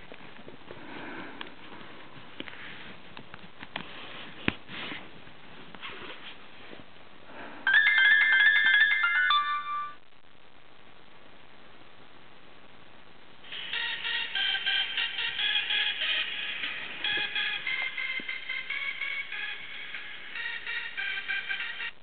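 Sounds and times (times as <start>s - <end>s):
phone ringtone melody: 7.7s - 10.0s, 13.5s - 21.9s.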